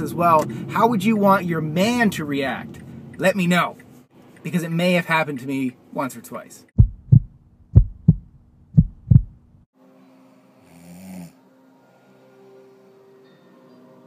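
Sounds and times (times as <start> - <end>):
heartbeat thumps: 6.8 - 9.6
person snoring: 10.6 - 11.4.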